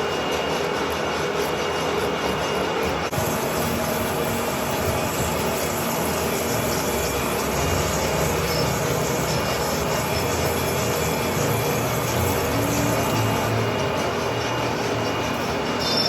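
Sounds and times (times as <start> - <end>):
metal lathe cutting steel: 0.0 - 16.0.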